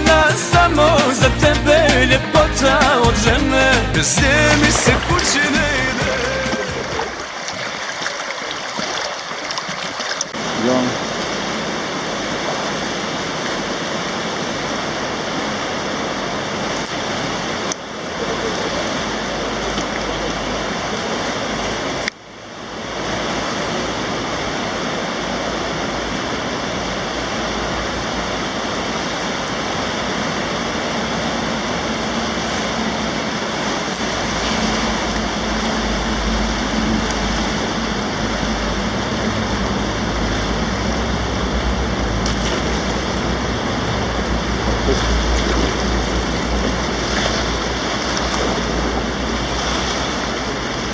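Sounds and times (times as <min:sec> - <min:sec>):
river water rushing over rapids: 0:00.0 - 0:50.9
deep low rumble: 0:34.0 - 0:50.9.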